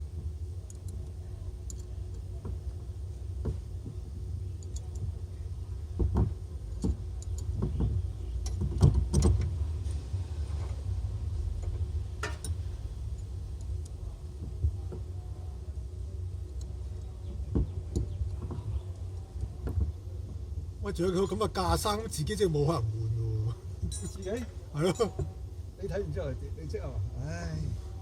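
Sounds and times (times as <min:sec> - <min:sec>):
steady low hum: 0:00.0 - 0:28.0
clicks and knocks of tools: 0:11.6 - 0:14.0.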